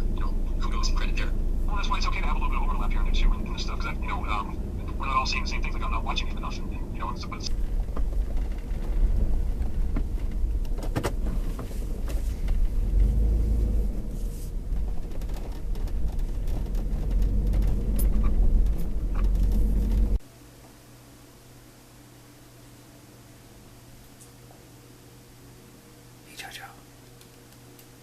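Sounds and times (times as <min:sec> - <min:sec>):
car engine and road noise: 0:00.0 - 0:20.3
clicks and rattles: 0:14.6 - 0:20.2.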